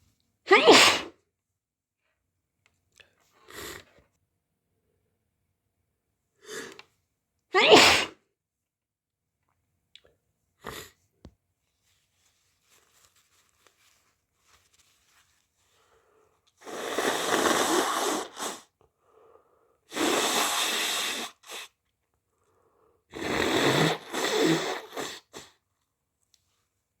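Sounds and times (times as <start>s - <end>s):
person sneezing: 0.5s - 1.2s, 7.5s - 8.2s, 16.6s - 18.7s, 19.9s - 21.7s, 23.2s - 25.6s
faint breath in: 15.8s - 21.5s.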